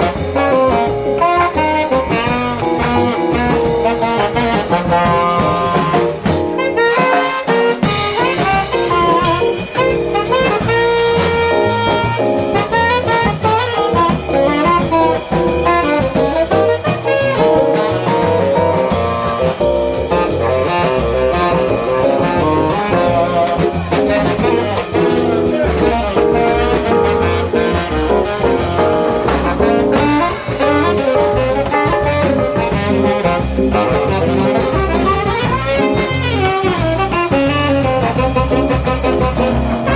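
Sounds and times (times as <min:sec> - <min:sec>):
jazz quartet playing: 0:00.0 - 0:39.9.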